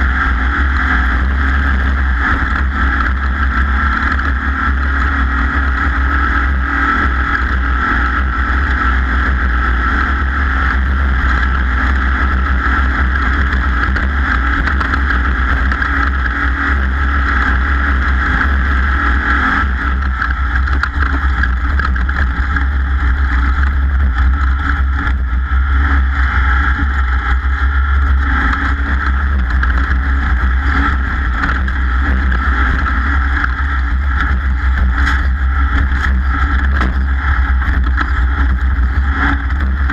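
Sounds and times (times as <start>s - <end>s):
race vehicle engine running: 0.0s - 39.9s
wind and drive noise: 0.0s - 39.9s.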